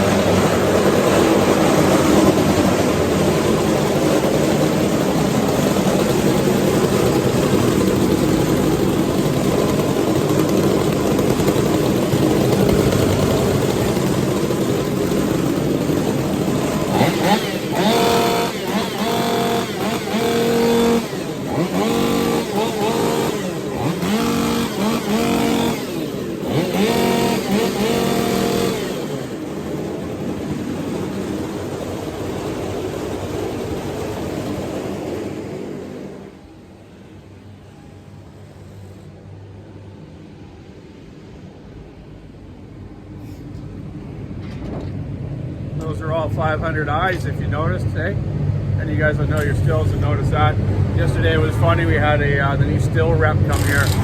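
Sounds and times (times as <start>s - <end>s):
chainsaw revving: 0.0s - 34.9s, 49.1s - 54.0s
chainsaws running together: 0.0s - 35.6s, 48.8s - 54.0s.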